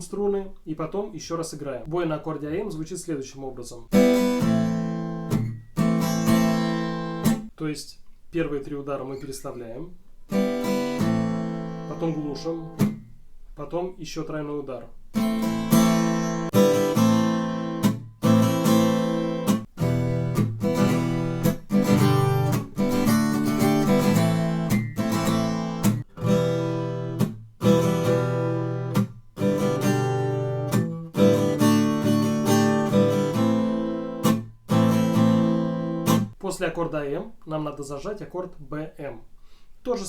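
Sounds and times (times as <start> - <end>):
acoustic guitar strumming: 3.9 - 7.5, 10.3 - 13.2, 15.1 - 36.3.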